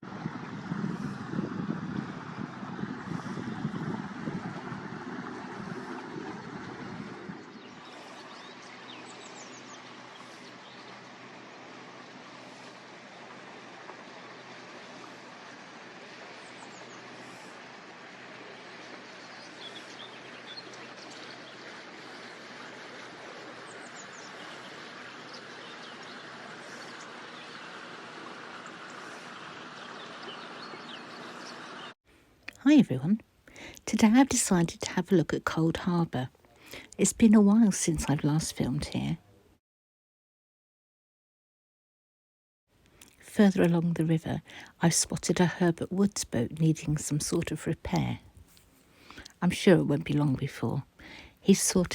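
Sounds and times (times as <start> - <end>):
birds chirping: 0.0 - 32.0.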